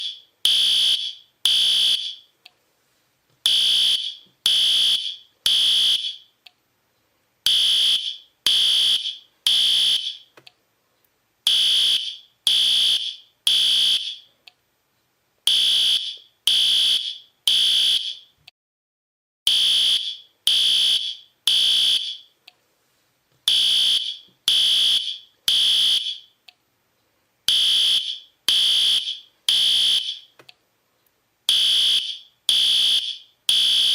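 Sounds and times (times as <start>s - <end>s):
fire alarm beeping: 0.0s - 2.3s, 3.5s - 6.3s, 7.5s - 10.3s, 11.5s - 14.3s, 15.5s - 18.3s, 19.5s - 22.4s, 23.5s - 26.4s, 27.5s - 30.3s, 31.5s - 33.9s.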